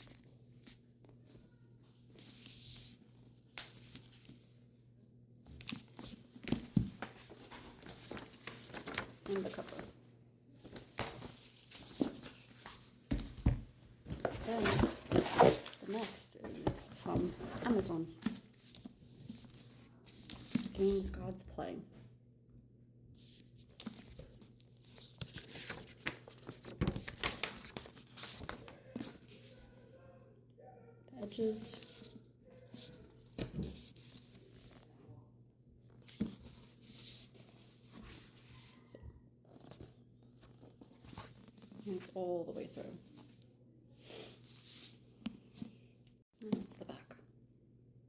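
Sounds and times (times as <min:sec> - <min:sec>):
book paper rustling: 0:05.5 - 0:10.0, 0:10.6 - 0:13.4, 0:14.1 - 0:21.0, 0:23.2 - 0:29.7, 0:31.2 - 0:34.9, 0:35.9 - 0:38.8, 0:39.5 - 0:43.4, 0:44.1 - 0:45.9
wrapping rustling and crinkling: 0:05.5 - 0:10.0, 0:14.1 - 0:21.0.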